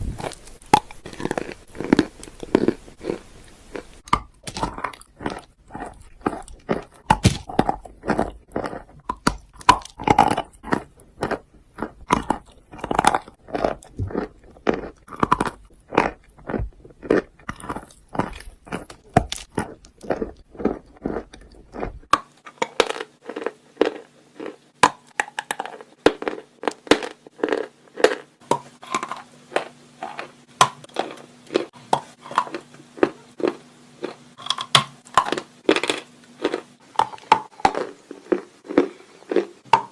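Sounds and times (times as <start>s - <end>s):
faint steady hum: 0.0s - 39.9s
chalk crunching when chewed: 0.1s - 39.6s.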